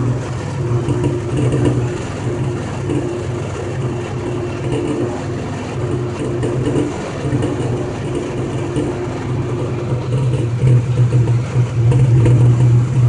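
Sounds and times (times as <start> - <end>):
knocking car engine hum: 0.0 - 13.0.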